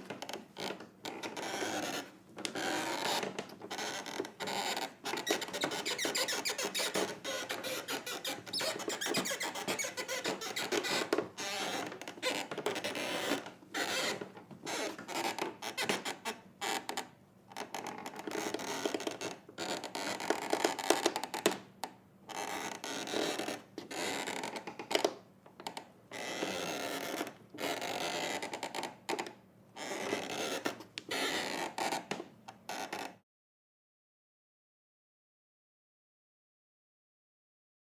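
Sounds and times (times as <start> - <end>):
wooden floorboards creaking: 0.0 - 17.0.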